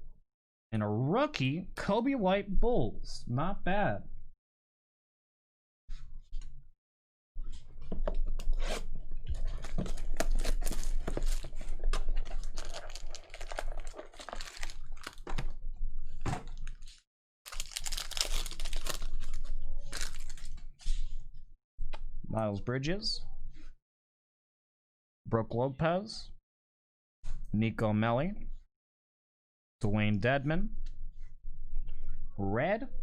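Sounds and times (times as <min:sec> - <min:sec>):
wrappers tearing and crinkling: 0:09.4 - 0:15.5, 0:16.5 - 0:20.6.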